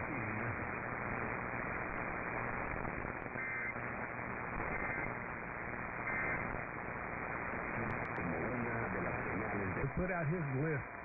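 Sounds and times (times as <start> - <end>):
radio static: 0.0 - 11.0
short data bursts: 3.4 - 3.8, 6.0 - 6.6.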